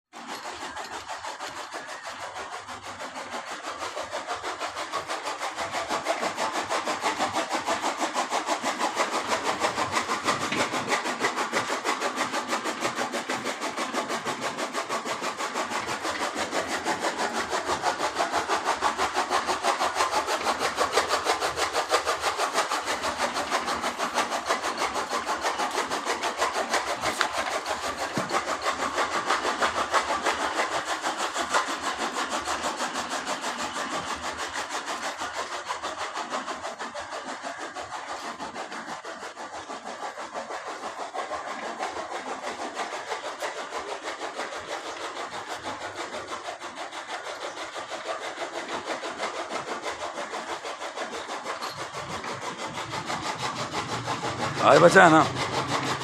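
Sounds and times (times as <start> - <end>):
fast rasping strokes: 0.1 - 56.0.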